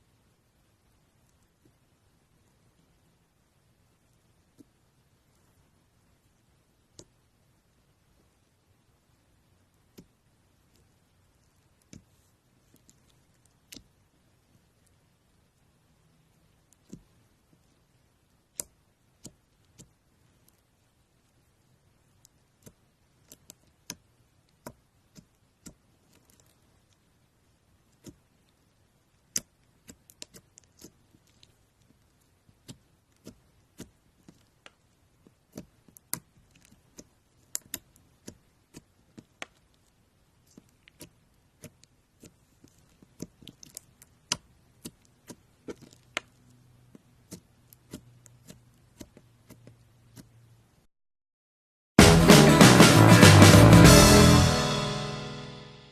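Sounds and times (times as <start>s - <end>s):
slime squishing with clicks: 4.1s - 5.0s, 6.3s - 8.2s, 9.6s - 50.6s.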